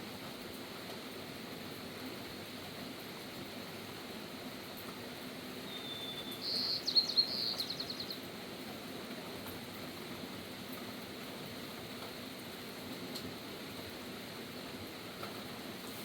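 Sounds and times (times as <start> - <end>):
rain hiss: 0.0 - 16.0
songbird call with trill: 5.6 - 8.2.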